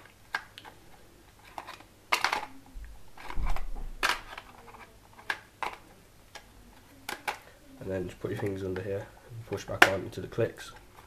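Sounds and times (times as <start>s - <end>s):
plastic parts clicking: 0.0s - 7.5s.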